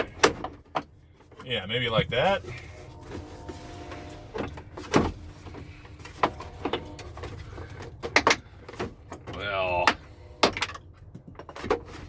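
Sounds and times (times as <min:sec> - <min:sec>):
faint steady hum: 0:02.1 - 0:11.6.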